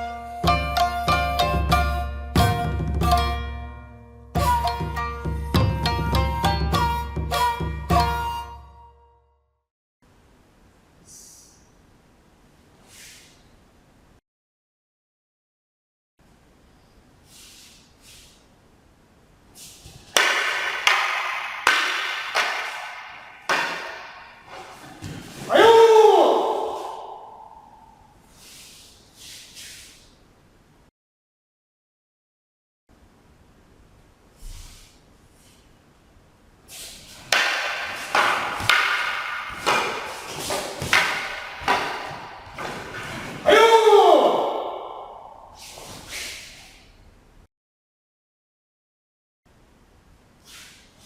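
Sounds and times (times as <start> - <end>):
wooden weapons swishing through air: 19.6 - 27.5, 36.7 - 43.5, 45.3 - 46.9
sharp wooden clacks: 20.1 - 24.7, 37.3 - 43.1.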